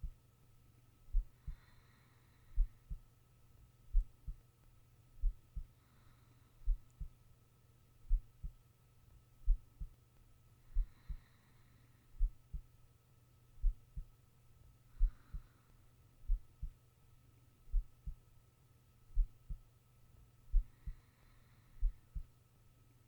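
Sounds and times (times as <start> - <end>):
steady low hum: 0.0 - 23.0
heartbeat thumps: 1.1 - 1.6, 2.6 - 3.0, 3.9 - 4.4, 5.2 - 5.7, 6.6 - 7.1, 8.1 - 8.6, 9.4 - 9.9, 12.2 - 12.7, 13.6 - 14.1, 16.3 - 16.8, 17.7 - 18.2, 19.1 - 19.7, 20.5 - 21.0, 21.8 - 22.3
faint breaths: 1.1 - 3.2, 5.2 - 7.2, 10.6 - 12.7, 14.8 - 16.8, 20.5 - 22.4.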